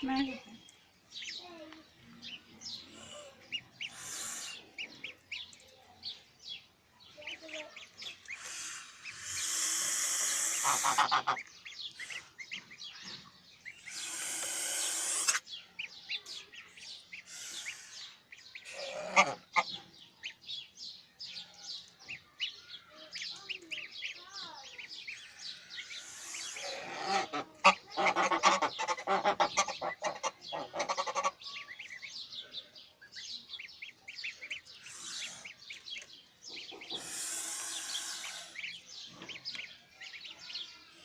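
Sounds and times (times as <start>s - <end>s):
goslings peeping: 0.0s - 1.4s, 2.2s - 5.6s, 7.2s - 20.7s, 21.4s - 41.0s
hissing noise bursts: 3.9s - 4.8s, 8.4s - 11.1s, 13.8s - 15.4s, 34.8s - 35.4s, 36.9s - 38.6s
low bird call: 8.0s - 13.0s, 34.1s - 40.6s.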